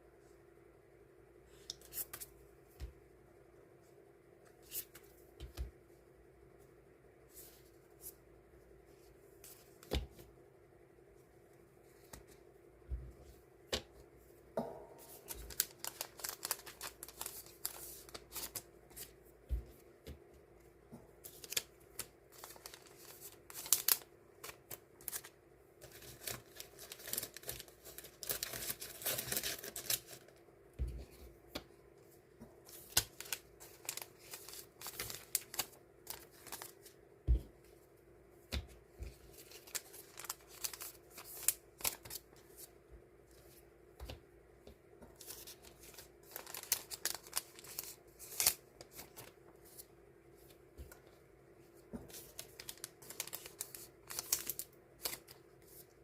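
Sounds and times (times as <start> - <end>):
paper stickers rustling: 15.0 - 19.2, 21.2 - 30.2, 32.7 - 36.9, 39.3 - 42.7, 45.2 - 51.2, 52.0 - 55.8.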